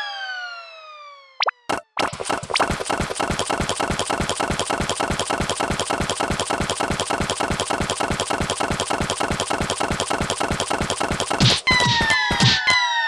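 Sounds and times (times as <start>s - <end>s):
rapid knocking thumps: 2.4s - 12.6s.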